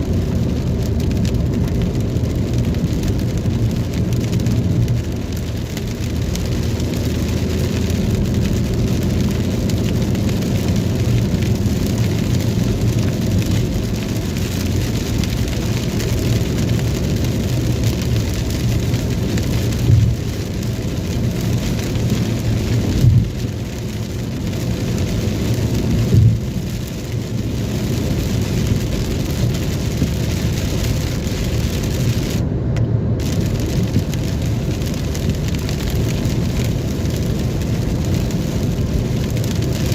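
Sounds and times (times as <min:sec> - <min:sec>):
heavy rain: 0:00.0 - 0:39.9
low vehicle hum: 0:00.0 - 0:39.9.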